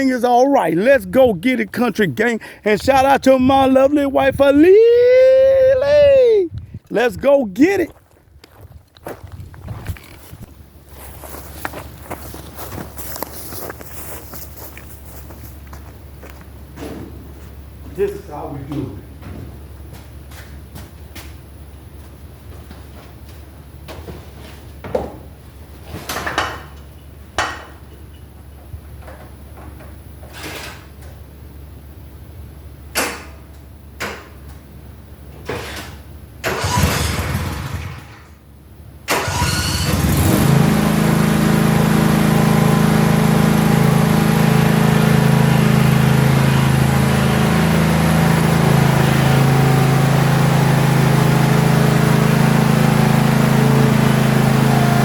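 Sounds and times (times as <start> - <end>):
lawn mower engine starting and running: 35.5 - 55.0.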